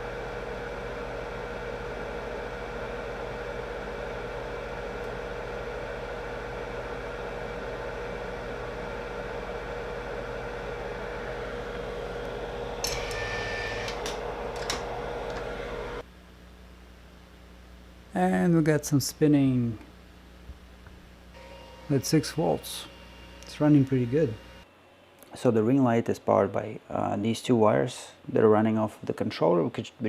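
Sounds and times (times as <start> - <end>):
electric fan humming: 0.0 - 28.8
brief high tones: 12.9 - 14.0.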